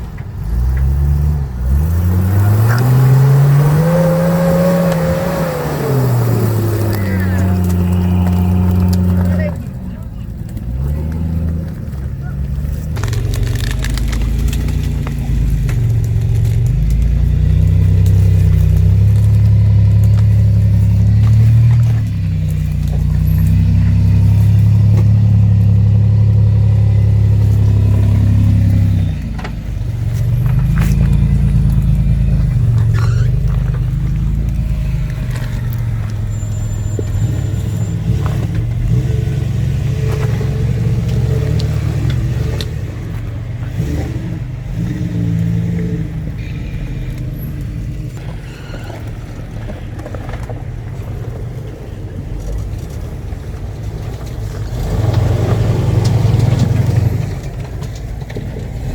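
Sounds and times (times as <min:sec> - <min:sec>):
off-road vehicle engine revving: 0:00.0 - 0:58.9.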